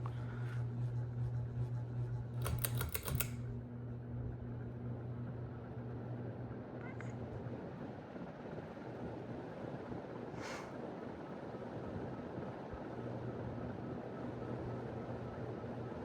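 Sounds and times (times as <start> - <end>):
ceiling fan motor hum: 0.0 - 16.0
quick sharp clicks: 2.4 - 3.4.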